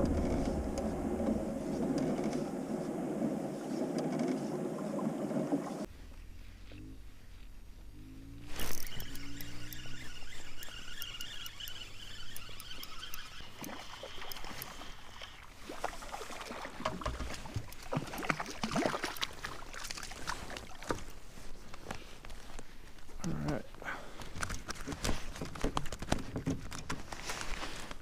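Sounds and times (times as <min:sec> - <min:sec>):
water splashing and sloshing: 0:00.0 - 0:06.0, 0:13.3 - 0:22.6.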